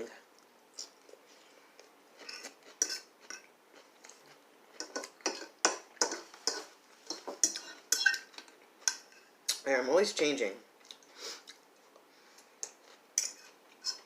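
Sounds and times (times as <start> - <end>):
cutlery clinking on dishes: 4.8 - 9.3, 12.6 - 14.0.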